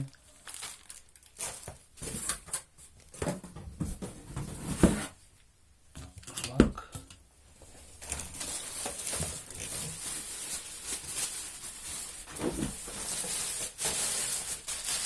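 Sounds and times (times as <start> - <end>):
plastic wrapping crinkling: 0.0 - 2.7, 7.8 - 15.0.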